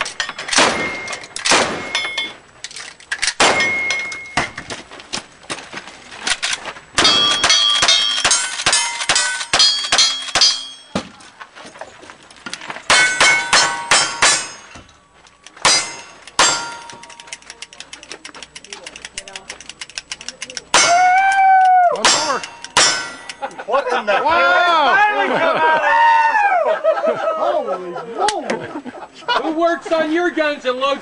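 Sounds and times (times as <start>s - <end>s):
steel plates clanging: 0.0s - 4.7s, 7.0s - 11.0s, 12.8s - 21.1s, 22.0s - 23.6s
pistol shots: 0.5s - 2.1s, 3.3s - 4.6s, 12.9s - 14.7s, 15.6s - 17.2s, 22.0s - 23.4s.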